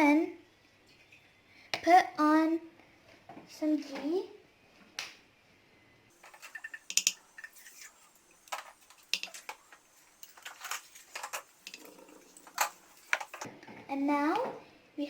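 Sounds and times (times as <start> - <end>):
spoon tapping and scraping pan: 6.2 - 7.9, 8.5 - 13.5.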